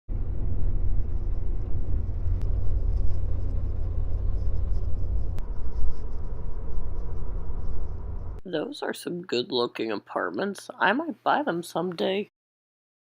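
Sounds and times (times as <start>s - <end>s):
car road rumble from inside: 0.1s - 8.4s.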